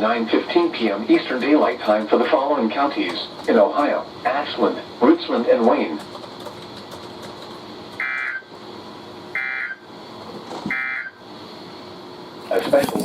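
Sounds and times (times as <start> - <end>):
radio hiss: 0.0 - 6.0, 12.4 - 13.0.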